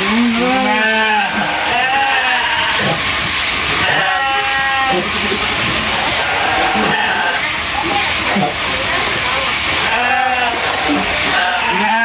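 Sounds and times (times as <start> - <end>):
steady hiss: 0.0 - 12.0
sheep bleating: 0.3 - 3.0, 3.8 - 5.3, 5.9 - 7.4, 9.8 - 12.0.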